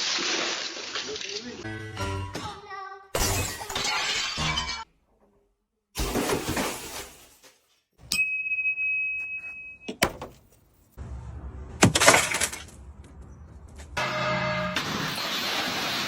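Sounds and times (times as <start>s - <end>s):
glass shattering crash: 3.2s - 4.8s, 11.8s - 12.7s.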